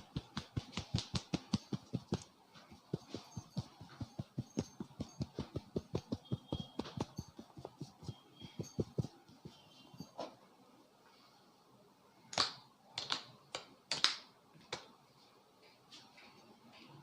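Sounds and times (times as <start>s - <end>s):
hands patting a head: 0.0s - 9.6s.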